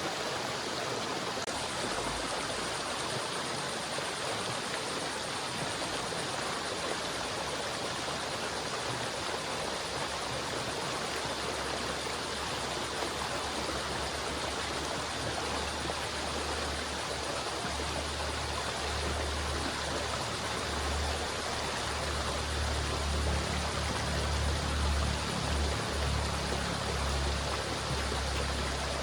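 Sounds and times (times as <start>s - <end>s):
river water rushing: 0.0s - 29.0s.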